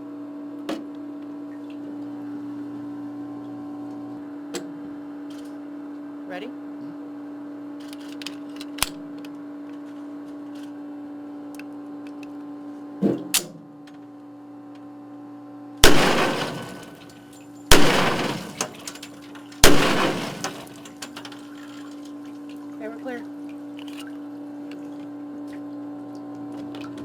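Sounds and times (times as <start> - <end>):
gunshots ringing in a room: 15.8 - 17.1, 17.7 - 21.0.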